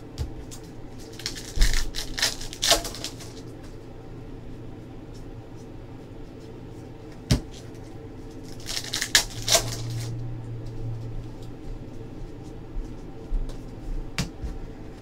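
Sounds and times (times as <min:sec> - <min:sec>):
low hum: 0:00.0 - 0:15.0
card packs crinkling and sliding: 0:01.0 - 0:03.7, 0:07.5 - 0:10.2.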